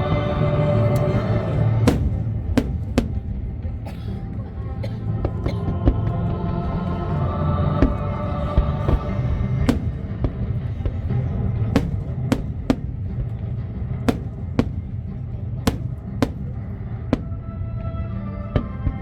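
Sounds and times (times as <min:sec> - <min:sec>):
music: 0:00.0 - 0:19.0
firework bangs: 0:01.8 - 0:03.7, 0:09.7 - 0:17.8.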